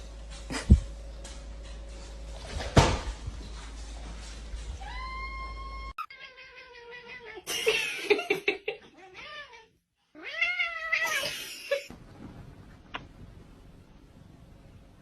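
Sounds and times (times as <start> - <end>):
cat meowing: 4.8 - 7.5, 9.0 - 11.2.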